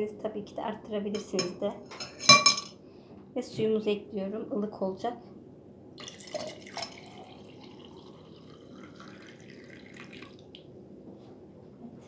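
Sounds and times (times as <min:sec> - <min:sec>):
water pouring in a thin stream: 0:06.0 - 0:10.4.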